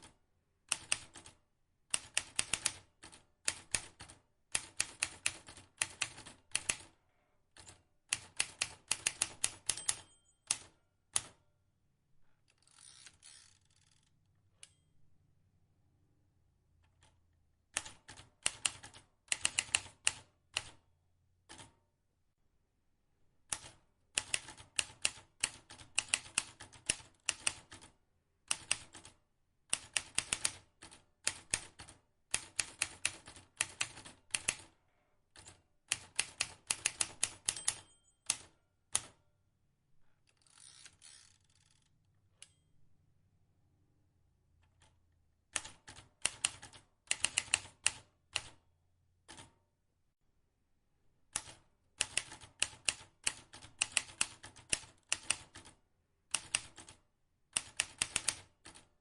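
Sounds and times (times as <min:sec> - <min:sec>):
typewriter key strikes: 0:09.1 - 0:10.7, 0:36.4 - 0:38.5.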